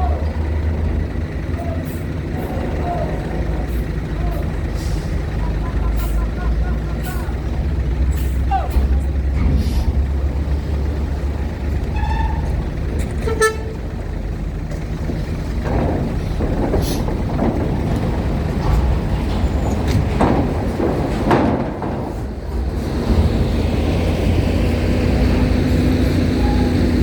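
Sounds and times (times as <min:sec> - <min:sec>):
truck and bus engines running: 0:00.0 - 0:27.0
short horn toots: 0:13.2 - 0:13.8.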